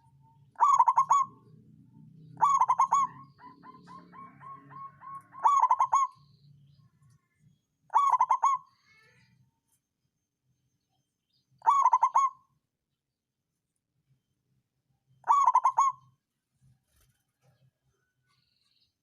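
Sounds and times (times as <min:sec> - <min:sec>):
dove cooing: 0:00.0 - 0:01.6, 0:02.3 - 0:06.2, 0:07.9 - 0:08.7, 0:11.6 - 0:12.4, 0:15.2 - 0:16.1.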